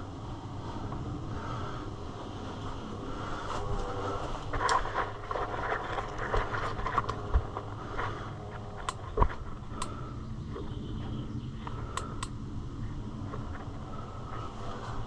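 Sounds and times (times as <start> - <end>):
rustling and scraping: 2.2 - 10.0
sharp clicks: 8.8 - 10.0, 11.6 - 12.4.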